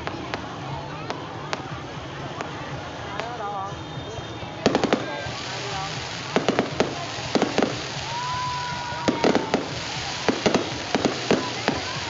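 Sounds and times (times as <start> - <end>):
fireworks bursting: 0.0 - 12.0
firework whistle: 3.7 - 12.0.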